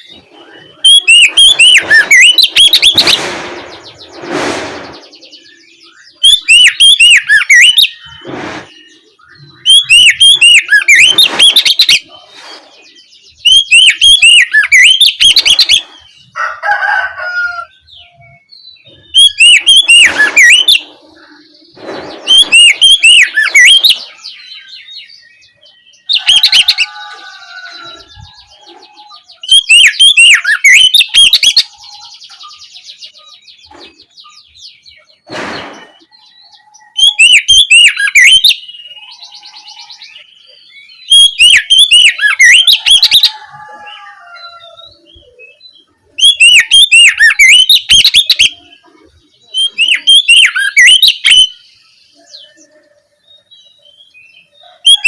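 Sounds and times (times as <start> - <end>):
soft bird twittering: 0.0 - 16.4, 17.4 - 55.0
bird singing loud rapid phrases: 0.0 - 55.0.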